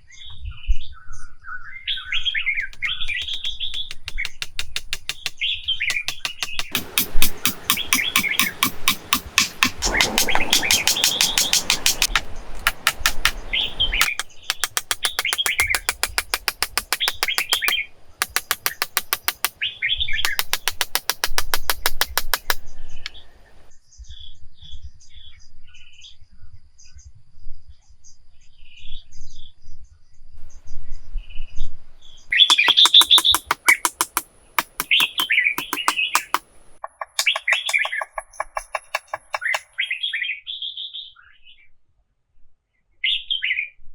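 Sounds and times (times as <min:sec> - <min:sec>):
fast rattling bird pulses: 0:02.6 - 0:19.5, 0:32.4 - 0:34.1, 0:34.7 - 0:39.9.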